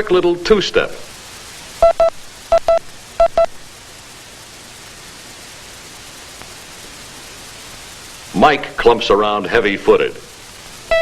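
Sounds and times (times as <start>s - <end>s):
steady hiss: 0.0s - 11.0s
morse code beeps: 1.8s - 3.5s.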